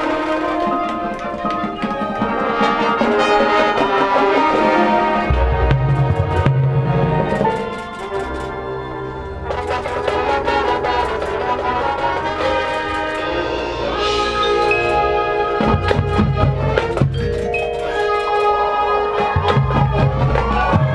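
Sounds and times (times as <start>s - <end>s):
marching band brass chords: 0.0s - 20.9s
drum hits: 5.3s - 7.7s.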